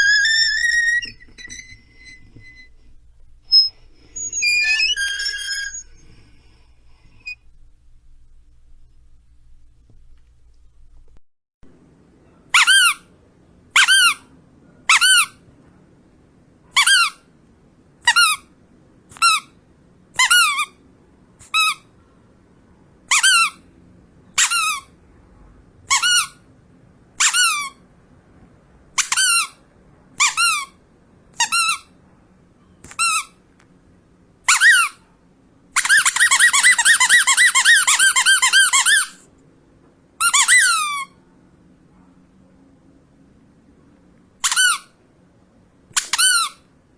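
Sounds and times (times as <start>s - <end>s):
rubber duck squeaks: 0.0s - 2.8s, 3.5s - 6.2s, 12.6s - 13.1s, 13.8s - 14.2s, 23.1s - 23.6s, 29.0s - 29.6s, 31.4s - 31.9s, 33.0s - 33.4s, 35.8s - 39.2s, 40.2s - 41.2s, 44.4s - 44.9s.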